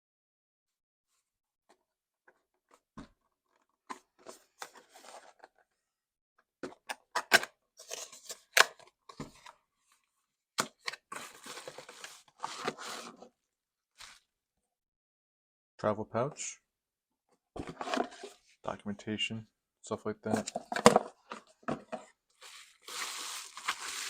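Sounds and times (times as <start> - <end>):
packaging crinkling and tearing: 22.5 - 24.0.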